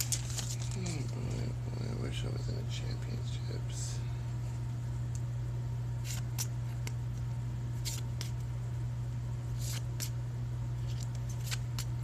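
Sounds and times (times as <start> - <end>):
cards flicking and rustling: 0.0 - 1.3, 6.0 - 7.0, 7.8 - 8.4, 9.6 - 10.2, 10.8 - 12.0
low electrical hum: 0.0 - 12.0.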